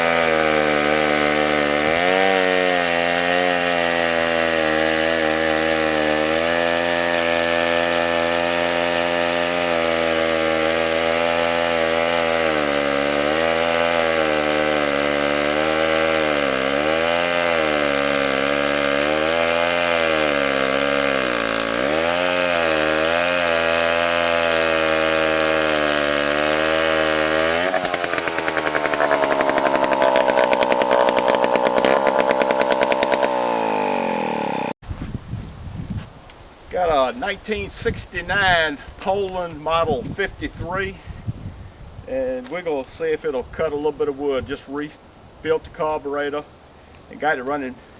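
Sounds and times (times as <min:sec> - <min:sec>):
chainsaw cutting a log: 0:00.0 - 0:34.8.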